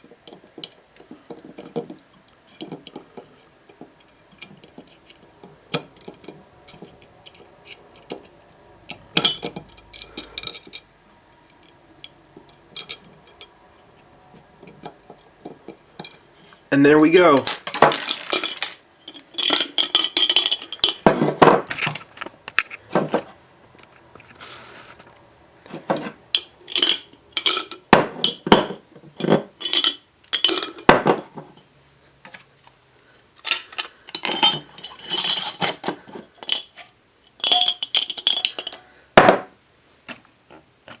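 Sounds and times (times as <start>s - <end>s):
plastic pieces knocking in glass jar: 17.2s - 23.2s, 37.4s - 39.4s.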